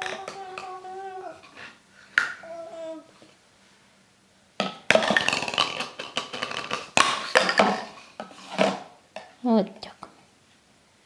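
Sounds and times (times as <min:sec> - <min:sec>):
plastic rings clattering: 0:04.9 - 0:08.8.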